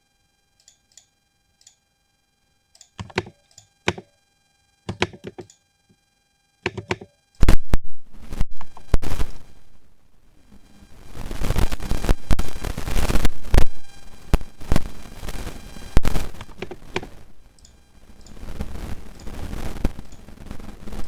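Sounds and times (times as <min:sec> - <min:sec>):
mechanical keyboard clacks: 0:03.0 - 0:04.1, 0:04.9 - 0:05.5, 0:06.7 - 0:07.1, 0:16.4 - 0:17.1.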